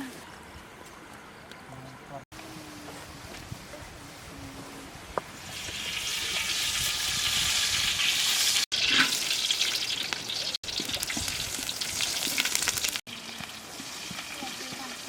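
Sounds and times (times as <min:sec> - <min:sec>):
snails sizzling in a pan: 0:05.4 - 0:15.0.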